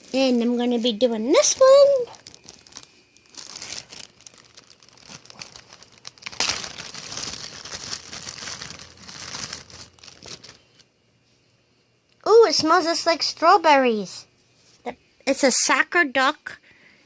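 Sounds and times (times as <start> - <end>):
packaging crinkling and tearing: 1.3 - 10.9.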